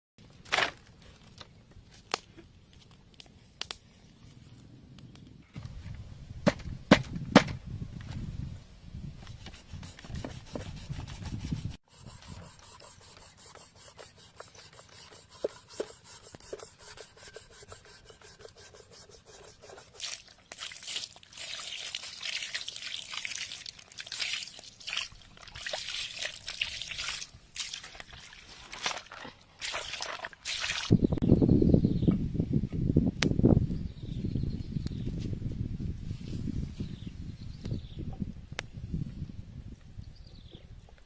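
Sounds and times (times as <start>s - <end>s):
scraping and rubbing strokes: 9.2s - 20.5s.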